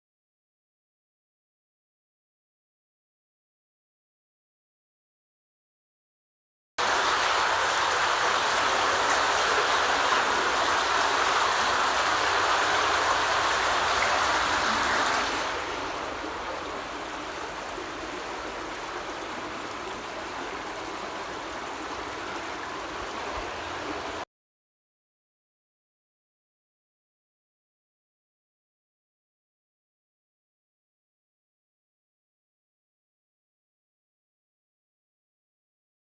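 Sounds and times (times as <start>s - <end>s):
water rushing through culvert: 6.8s - 24.2s.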